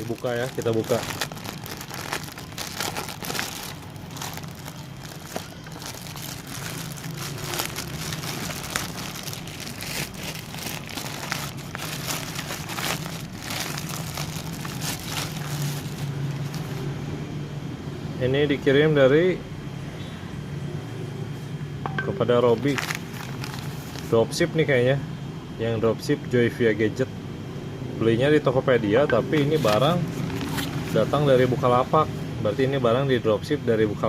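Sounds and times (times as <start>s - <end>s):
plastic packaging crinkling and tearing: 0.0s - 16.9s, 22.4s - 24.2s, 29.4s - 31.1s
steady low hum: 0.0s - 18.3s.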